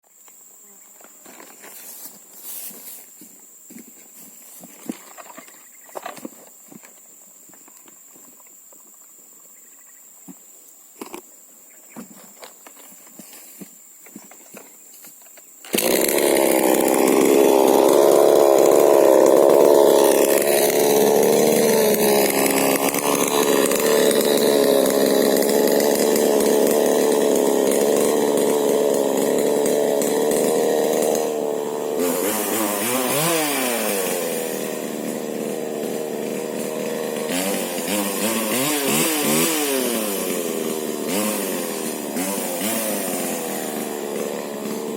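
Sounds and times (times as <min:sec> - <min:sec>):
chainsaw running at high revs: 0:15.7 - 0:44.9.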